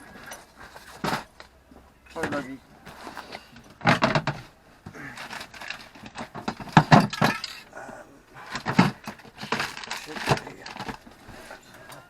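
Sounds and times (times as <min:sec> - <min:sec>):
metal hand tools clanking: 0:05.1 - 0:11.5.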